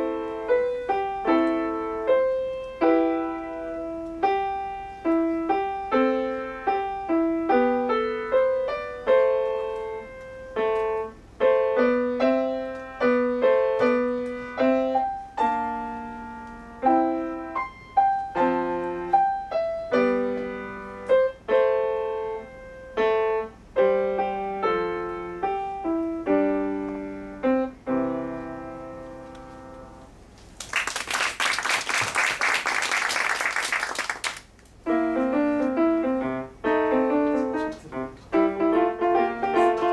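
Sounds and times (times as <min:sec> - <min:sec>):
solo piano melody: 0:00.0 - 0:30.4, 0:34.8 - 0:39.9
audience applause: 0:30.6 - 0:34.5.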